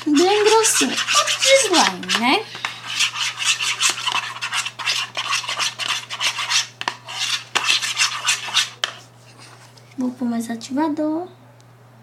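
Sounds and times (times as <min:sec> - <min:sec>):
spoon stirring slime: 0:00.0 - 0:09.5.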